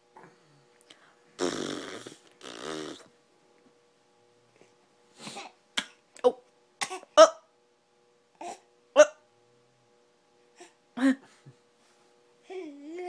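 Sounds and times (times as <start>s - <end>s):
baby coughing: 6.8s - 7.4s.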